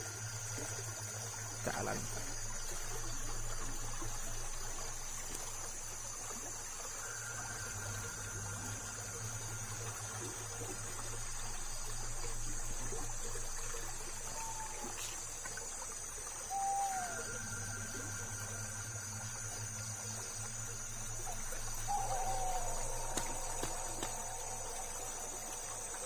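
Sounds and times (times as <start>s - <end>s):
insects chirring: 0.0s - 26.0s
low steady hum: 0.0s - 26.0s
falling whistle-like calls: 14.3s - 15.2s, 16.4s - 19.2s, 21.2s - 25.6s.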